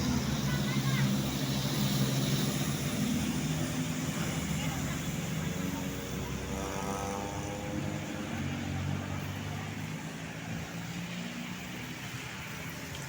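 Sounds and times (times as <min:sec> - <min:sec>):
bus engine hum: 0:00.0 - 0:10.0.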